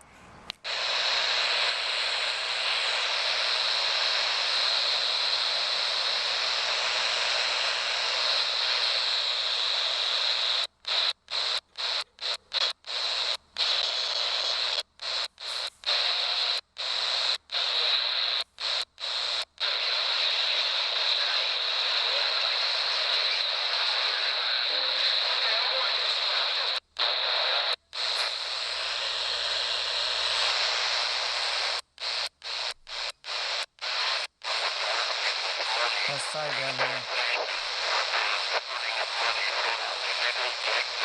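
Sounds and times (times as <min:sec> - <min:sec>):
radio static hiss: 0:00.0 - 0:41.0.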